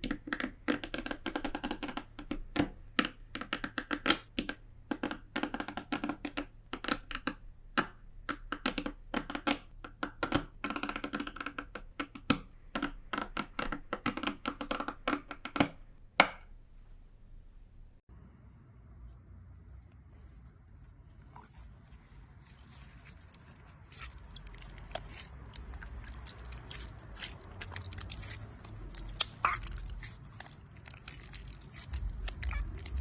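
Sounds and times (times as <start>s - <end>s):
hollow ringing tapping and clicking: 0.0s - 18.0s.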